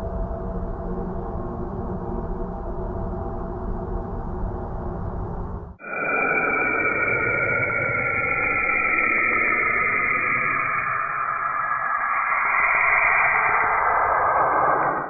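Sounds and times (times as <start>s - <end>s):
high tones drifting down: 5.8s - 15.0s.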